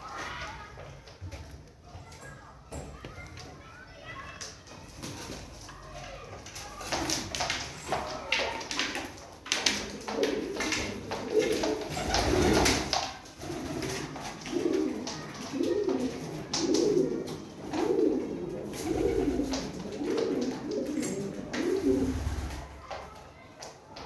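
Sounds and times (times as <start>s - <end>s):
pigeons cooing: 6.8s - 23.0s.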